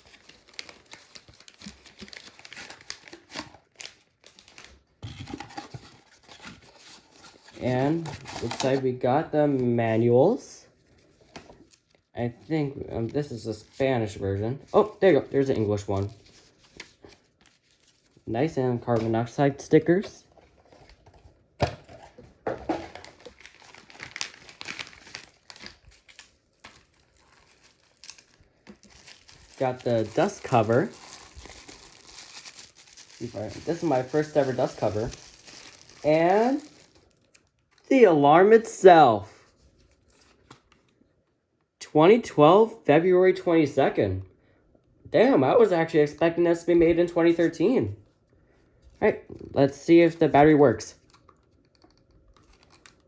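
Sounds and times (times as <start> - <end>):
packaging crinkling and rustling: 0.0 - 8.8, 19.9 - 37.9, 51.0 - 53.0.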